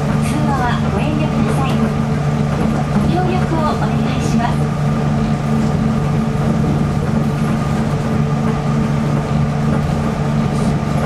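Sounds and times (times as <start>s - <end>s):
train running with motor hum: 0.0s - 11.0s.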